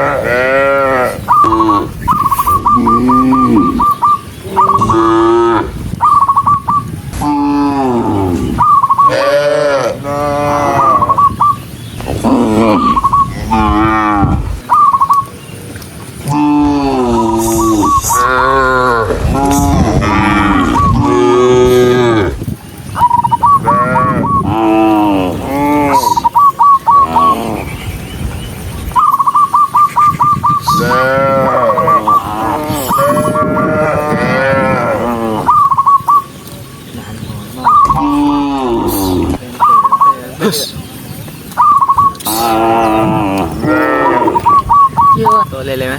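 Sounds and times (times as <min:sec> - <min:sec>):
cattle mooing: 0:00.0 - 0:01.9, 0:04.6 - 0:05.8, 0:07.3 - 0:11.2, 0:12.2 - 0:14.6, 0:16.2 - 0:22.4, 0:30.7 - 0:35.6, 0:37.8 - 0:39.4, 0:42.3 - 0:44.5.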